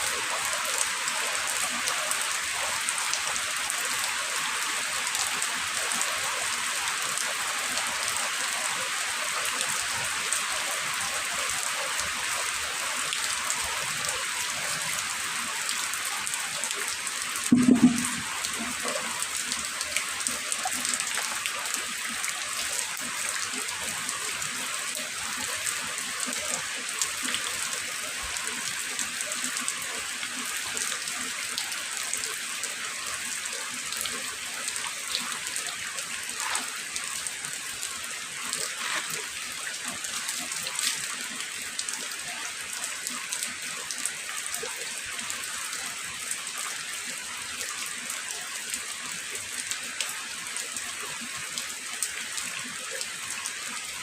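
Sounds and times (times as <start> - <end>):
steady rain falling: 0.0 - 54.0
loud knock: 17.5 - 18.3.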